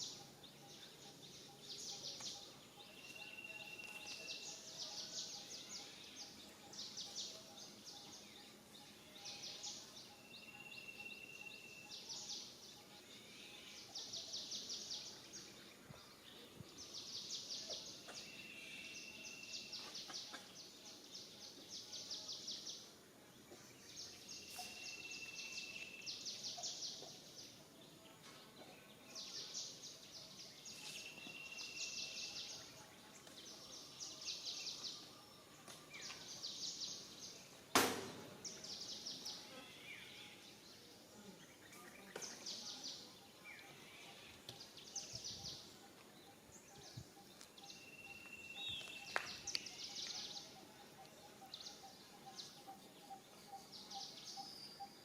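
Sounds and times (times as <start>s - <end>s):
sharp knock: 37.7s - 38.3s.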